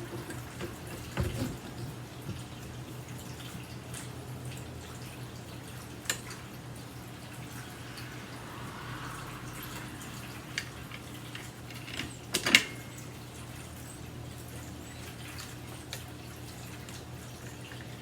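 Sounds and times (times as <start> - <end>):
steady low hum: 6.4 - 12.1.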